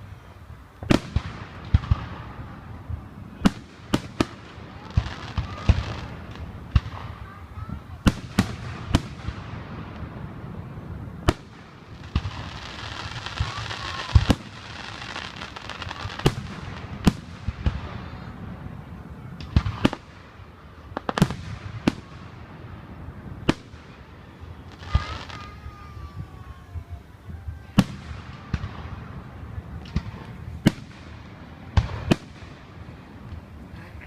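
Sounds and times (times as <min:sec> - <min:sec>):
fireworks bangs: 0:00.0 - 0:34.0
fireworks crackling: 0:00.0 - 0:34.0.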